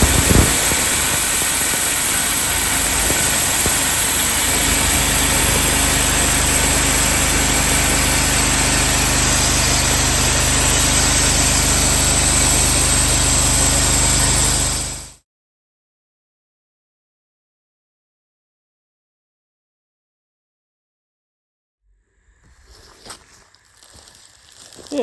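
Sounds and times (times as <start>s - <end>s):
sawmill engine running: 0.0s - 15.2s.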